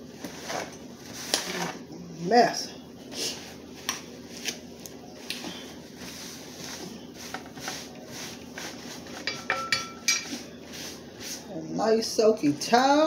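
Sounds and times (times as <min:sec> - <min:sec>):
tableware clicking and tapping: 0:09.2 - 0:10.4.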